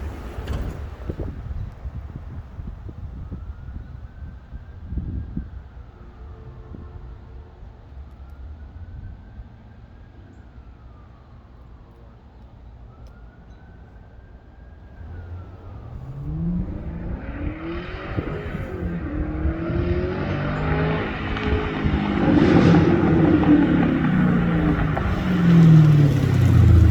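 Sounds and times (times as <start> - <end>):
vehicle engine rumbling: 0.0 - 5.9, 14.7 - 26.9.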